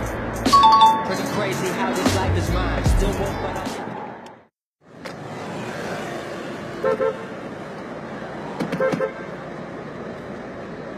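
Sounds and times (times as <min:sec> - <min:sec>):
street traffic noise: 0:00.0 - 0:10.9
car horn honking: 0:06.8 - 0:07.3, 0:08.7 - 0:09.3.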